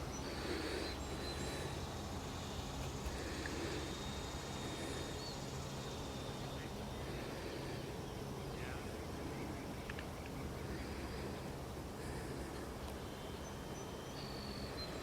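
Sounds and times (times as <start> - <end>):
faint high whine: 0.0 - 15.0
faint bird chirps: 13.0 - 15.0.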